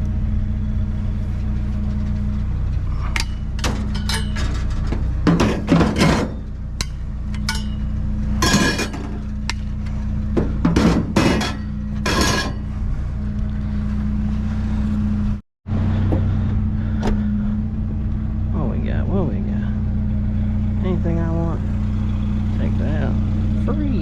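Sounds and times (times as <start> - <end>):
low engine hum: 0.0 - 24.0
metal clanking and banging: 1.9 - 12.8.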